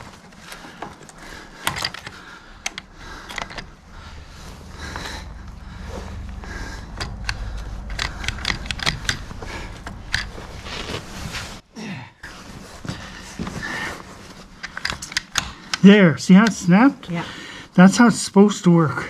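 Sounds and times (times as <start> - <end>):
low steady hum: 0.0 - 19.0
clamp tool clicking and scraping: 6.9 - 10.4, 14.6 - 15.8.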